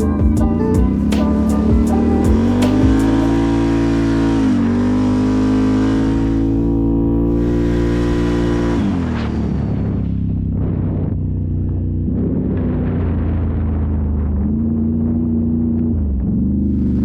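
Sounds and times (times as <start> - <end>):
engine revving under throttle: 0.9 - 11.2.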